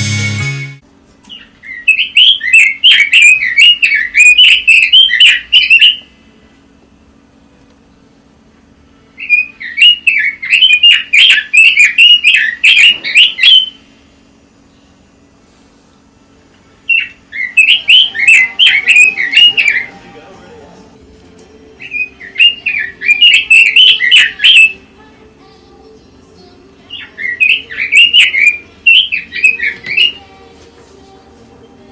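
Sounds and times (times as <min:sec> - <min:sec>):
faint steady hum: 0:00.0 - 0:31.9
bird singing warbled phrases: 0:01.3 - 0:06.2, 0:09.2 - 0:13.9, 0:16.7 - 0:20.3, 0:21.6 - 0:30.5.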